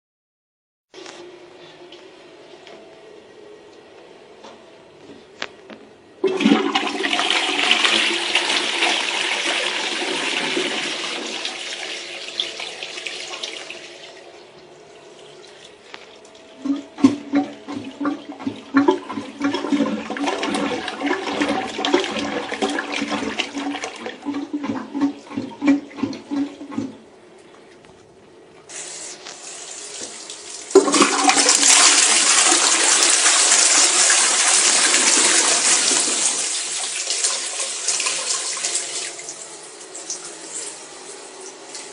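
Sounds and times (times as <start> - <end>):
toilet flushing: 6.2 - 27.7, 28.6 - 41.9
water gurgling: 15.3 - 27.1
cistern refilling hiss: 28.7 - 30.8.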